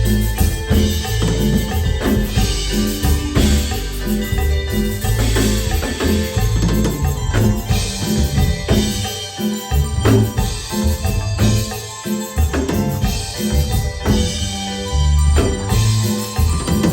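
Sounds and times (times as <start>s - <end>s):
live band playing through pa: 0.0s - 16.9s.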